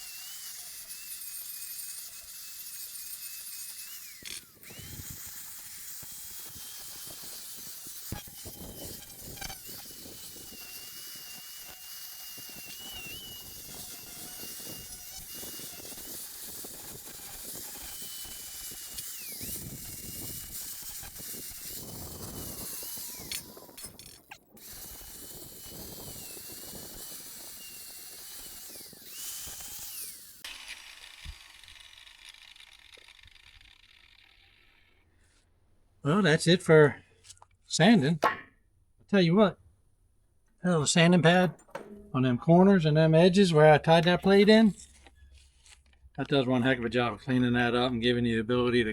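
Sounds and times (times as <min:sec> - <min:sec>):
angle grinder sanding metal: 0:00.0 - 0:34.6
grinder winding down: 0:00.0 - 0:35.0.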